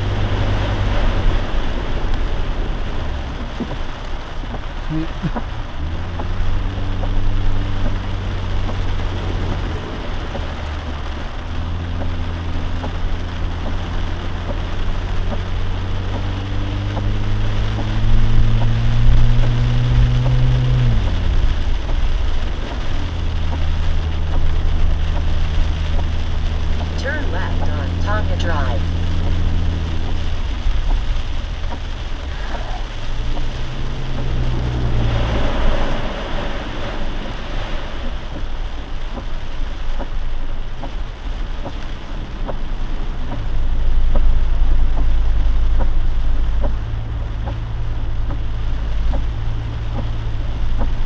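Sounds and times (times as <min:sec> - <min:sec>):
car engine accelerating: 0:00.0 - 0:51.0
rain hiss: 0:00.0 - 0:51.0
tyres on wet road: 0:00.0 - 0:51.0.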